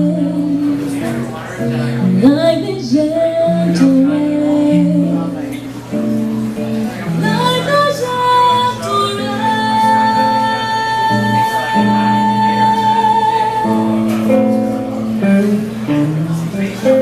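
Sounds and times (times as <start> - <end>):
woman singing jazz: 0.0 - 1.0, 2.1 - 5.6, 7.1 - 14.6
guitar accompaniment: 0.0 - 17.0.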